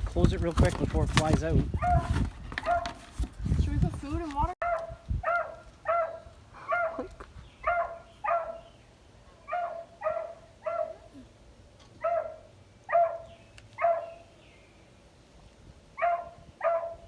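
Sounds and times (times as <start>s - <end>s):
dog barking: 1.8s - 3.0s, 4.6s - 8.7s, 9.4s - 11.1s, 12.0s - 14.2s, 16.0s - 17.0s.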